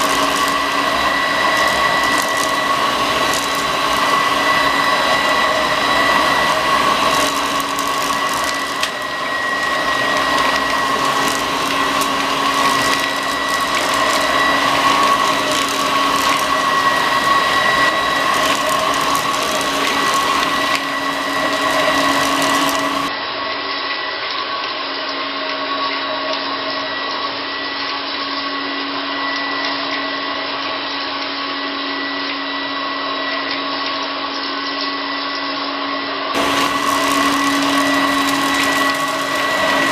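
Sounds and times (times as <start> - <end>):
vacuum cleaner running: 0.0 - 24.2, 35.8 - 39.9.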